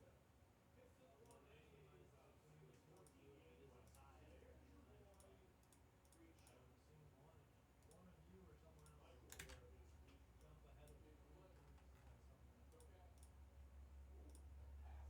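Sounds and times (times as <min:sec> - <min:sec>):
low electrical hum: 0:00.0 - 0:15.0
faint clicks: 0:08.8 - 0:09.6.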